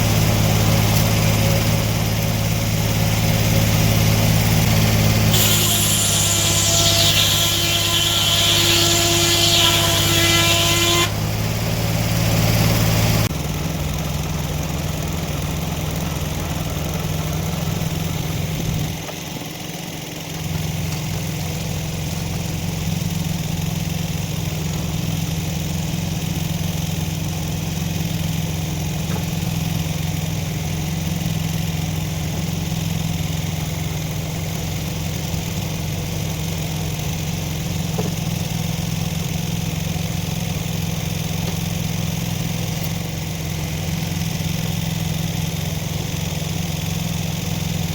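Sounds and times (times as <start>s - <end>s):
saw cutting wood: 0.0s - 25.6s
sawmill engine running: 0.0s - 47.9s.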